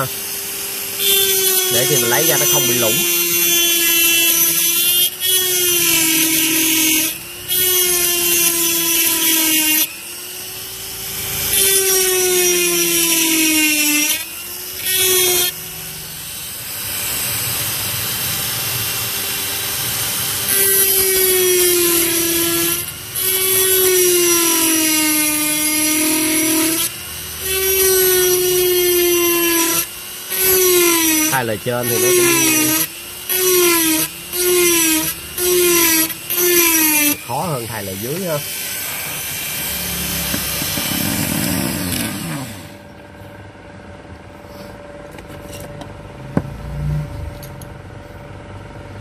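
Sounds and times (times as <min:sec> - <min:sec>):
electric drill whining: 0:00.0 - 0:42.9.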